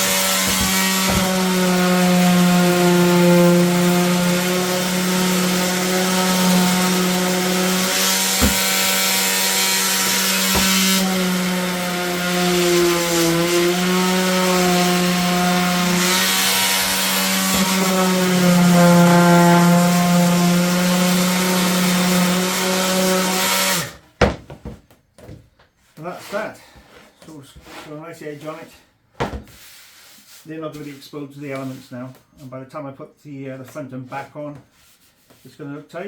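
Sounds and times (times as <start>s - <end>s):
power tool motor humming: 0.0s - 24.0s.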